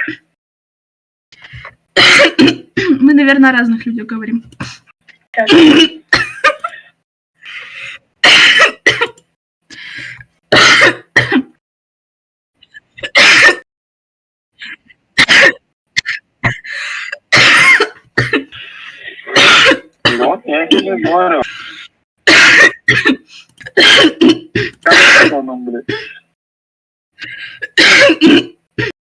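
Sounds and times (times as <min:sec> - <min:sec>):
woman coughing harshly: 0:02.0 - 0:03.0, 0:05.4 - 0:06.6, 0:08.2 - 0:09.2, 0:10.5 - 0:11.6, 0:13.0 - 0:13.6, 0:15.2 - 0:18.5, 0:19.3 - 0:21.4, 0:22.3 - 0:26.4, 0:27.6 - 0:29.0
woman clearing her throat: 0:05.4 - 0:06.4, 0:23.8 - 0:26.3, 0:27.8 - 0:28.9.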